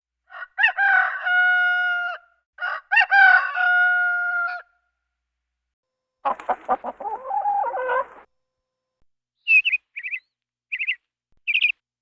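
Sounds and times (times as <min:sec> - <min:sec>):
rooster crowing: 0:00.3 - 0:04.7.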